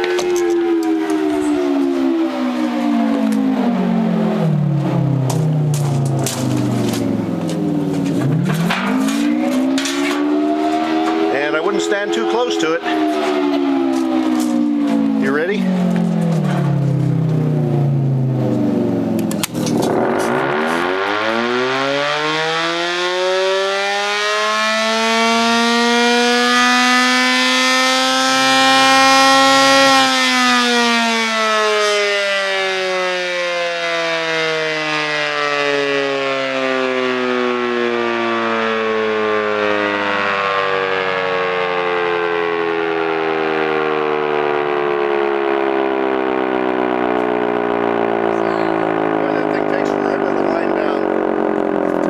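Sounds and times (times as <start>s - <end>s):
siren wailing: 0.0s - 52.0s.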